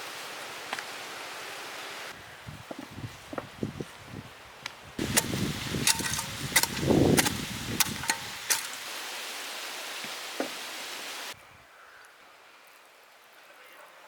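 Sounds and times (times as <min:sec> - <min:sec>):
handling sound: 0:05.0 - 0:08.9.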